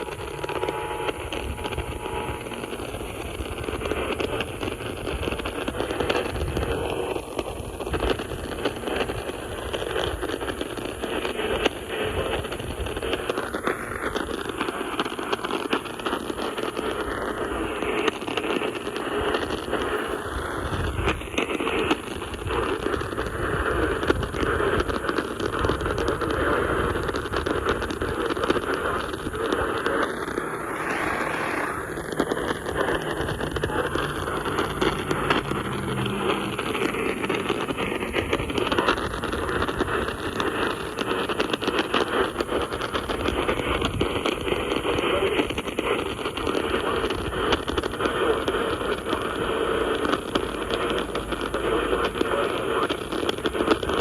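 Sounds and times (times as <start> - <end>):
radio static hiss: 0.0 - 54.0
faint sliding whistle: 29.9 - 36.9.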